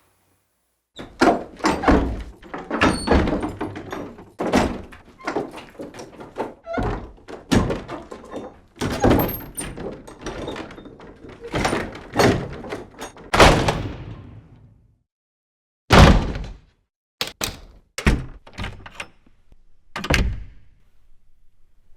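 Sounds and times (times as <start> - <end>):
door slamming: 1.0 - 8.0, 11.6 - 14.1, 17.2 - 18.9, 20.0 - 20.6
door latch clicks and knocks: 17.2 - 19.3.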